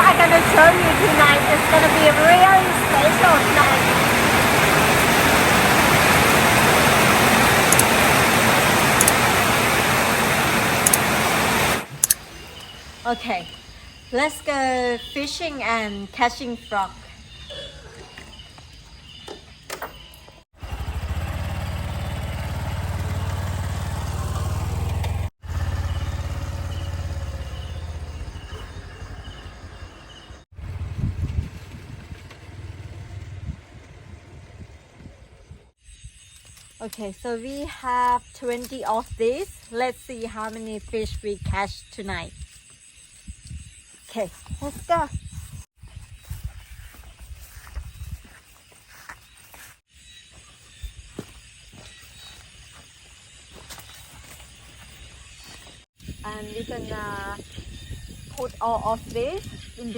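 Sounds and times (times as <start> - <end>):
small motorcycle engine running: 0.0 - 12.2, 20.6 - 35.6.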